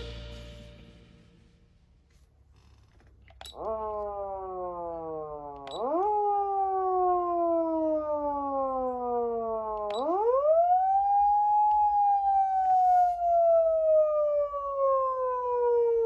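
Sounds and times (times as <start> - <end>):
electronic siren wail: 3.5 - 16.0.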